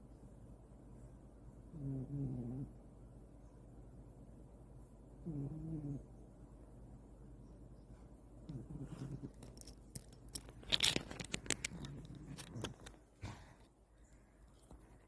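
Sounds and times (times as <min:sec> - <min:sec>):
cat snoring: 0:01.7 - 0:02.7, 0:05.2 - 0:06.0, 0:08.5 - 0:09.3
sharp clicking and scratchy noises: 0:08.5 - 0:13.0.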